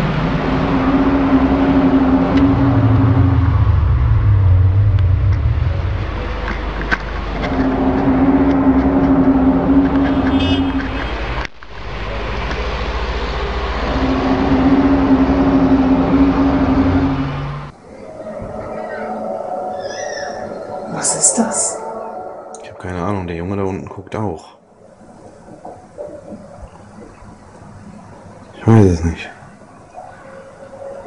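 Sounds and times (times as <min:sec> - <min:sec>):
deep rumble: 0:00.0 - 0:24.2
low droning hum: 0:00.0 - 0:28.6.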